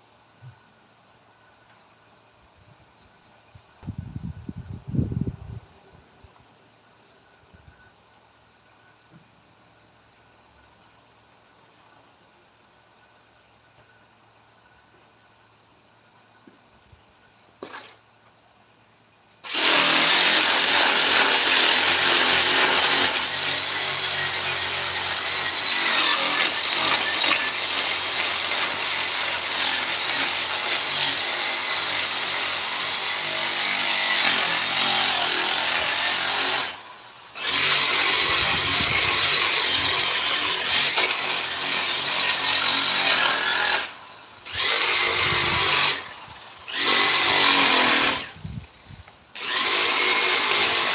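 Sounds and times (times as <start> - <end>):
power tool working wood: 19.5 - 48.4, 49.4 - 50.9.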